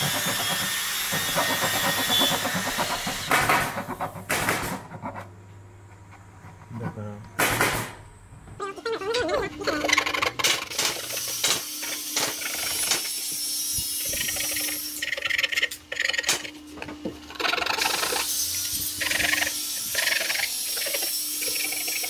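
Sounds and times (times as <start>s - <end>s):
oscillating multi-tool buzzing: 0.0s - 4.0s, 9.4s - 22.0s
blade rasping through wood: 0.0s - 5.3s.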